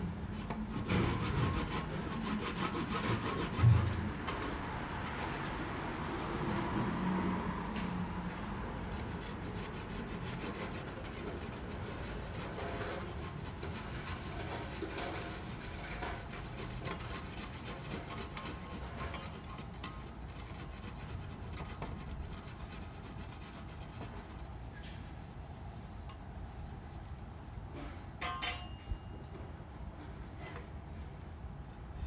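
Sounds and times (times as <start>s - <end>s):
hand tool scraping wood: 0.3s - 7.0s, 8.9s - 25.2s.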